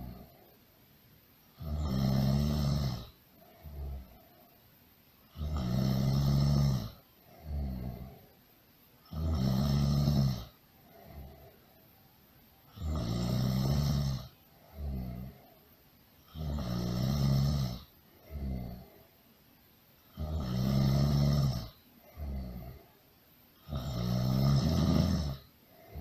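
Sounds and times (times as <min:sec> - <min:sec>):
person snoring: 0:00.0 - 0:00.6, 0:01.5 - 0:04.5, 0:05.3 - 0:08.4, 0:09.0 - 0:11.7, 0:12.7 - 0:15.6, 0:16.2 - 0:19.1, 0:20.1 - 0:23.0, 0:23.6 - 0:26.0.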